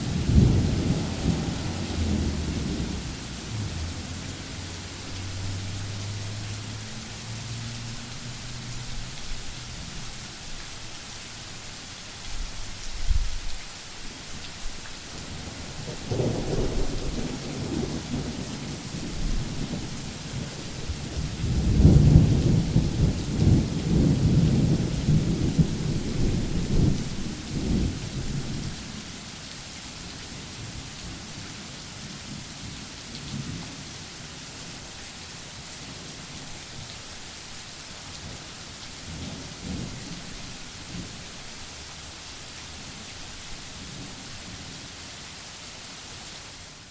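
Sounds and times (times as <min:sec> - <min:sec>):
thunder rumbling: 0:00.0 - 0:06.8, 0:15.2 - 0:28.8
steady rain hissing: 0:00.0 - 0:46.9
thunder clap: 0:00.1 - 0:04.0.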